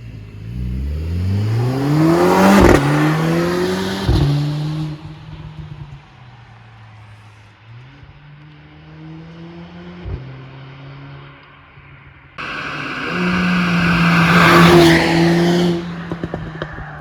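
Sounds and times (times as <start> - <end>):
car engine revving: 0.1 - 5.1, 12.4 - 17.0
exhaust crackles: 12.4 - 17.0.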